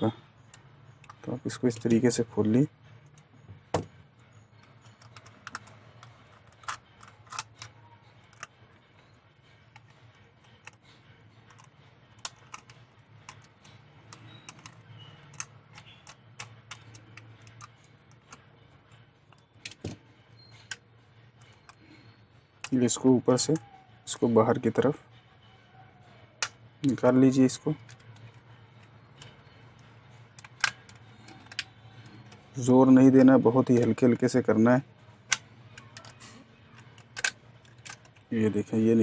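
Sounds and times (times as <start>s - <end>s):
plastic parts clicking and tapping: 0.5s - 2.1s, 4.6s - 8.9s, 9.6s - 20.8s, 26.4s - 34.5s, 35.2s - 38.3s.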